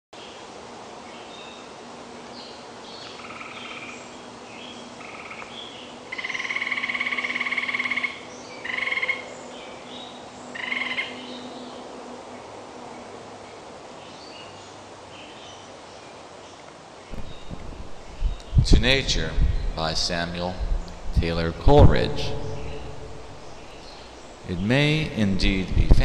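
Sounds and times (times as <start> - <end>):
faint steady hum: 16.9 - 26.0.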